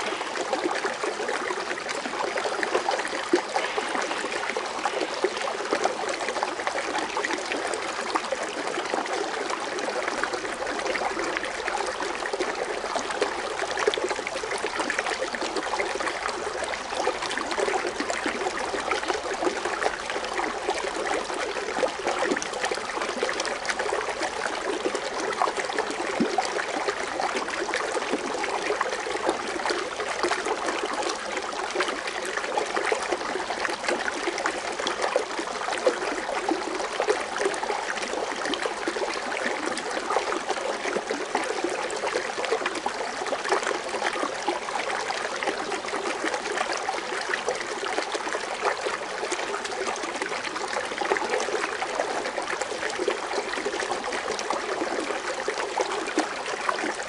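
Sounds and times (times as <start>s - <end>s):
water fountain splashing: 0.0s - 7.8s.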